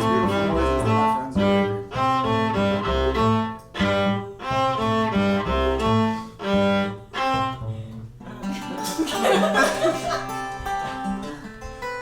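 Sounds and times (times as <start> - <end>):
deep bass line: 0.0 - 8.2
viola bowed notes: 0.0 - 12.0.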